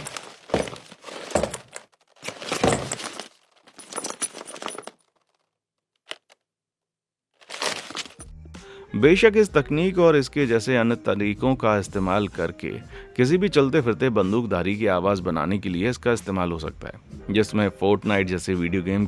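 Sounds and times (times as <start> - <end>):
metal clinking in a bag: 0.0 - 5.4, 7.4 - 8.3.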